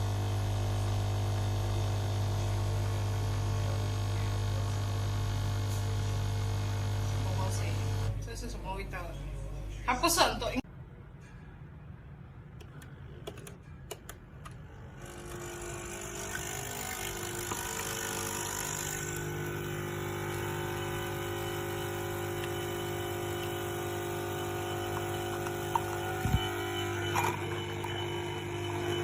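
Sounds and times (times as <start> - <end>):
coffee machine pump buzzing hum: 0.0 - 8.1, 14.6 - 29.0.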